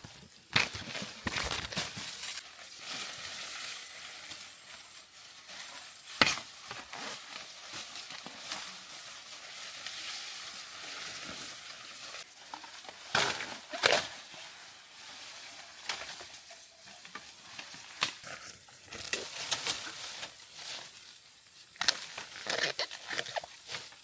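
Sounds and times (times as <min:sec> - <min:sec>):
rustling through undergrowth: 0:00.0 - 0:24.0
stems snapping and cracking: 0:00.5 - 0:03.1, 0:13.0 - 0:14.2, 0:17.1 - 0:19.9, 0:21.7 - 0:23.9.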